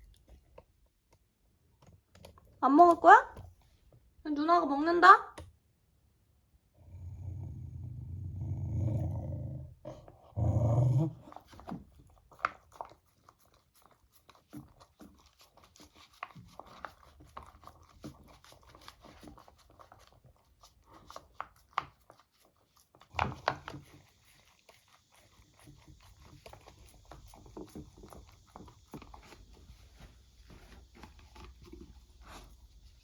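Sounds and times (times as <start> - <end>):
dog chewing and licking: 11.1 - 33.0.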